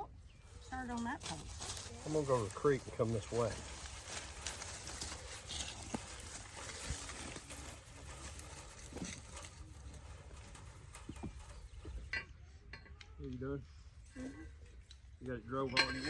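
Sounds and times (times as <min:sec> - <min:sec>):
footsteps in brush: 0:00.5 - 0:12.1.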